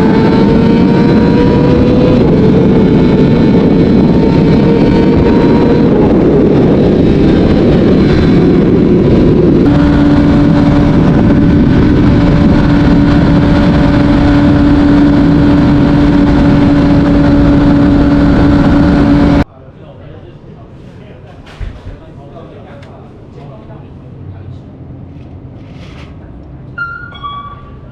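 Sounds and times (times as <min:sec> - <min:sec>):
motorcycle engine at speed: 0:00.0 - 0:19.4
wind and road noise: 0:00.0 - 0:19.5.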